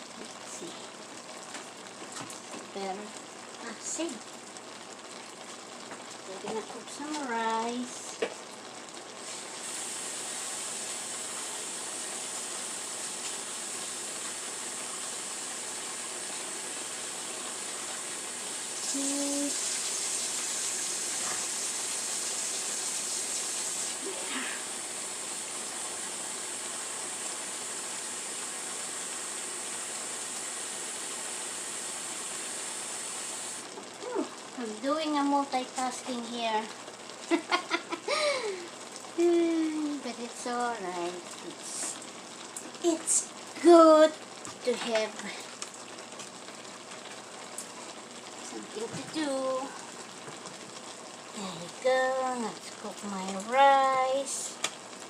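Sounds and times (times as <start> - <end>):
water running from tap: 0.0 - 55.0.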